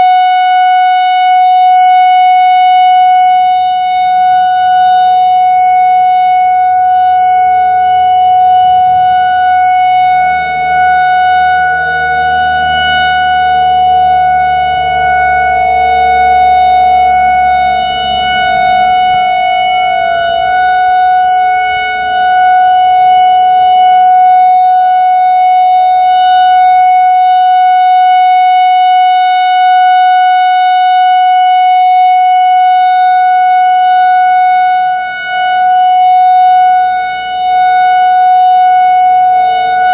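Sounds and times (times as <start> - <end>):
outdoor warning siren steady tone: 0.0 - 39.9
low rumble: 6.0 - 24.5.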